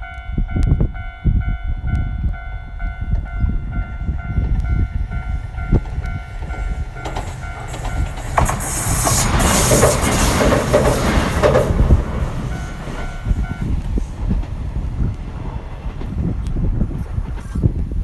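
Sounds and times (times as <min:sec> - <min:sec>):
level-crossing warning bell: 0:00.0 - 0:14.4
electric train approaching: 0:00.0 - 0:18.0.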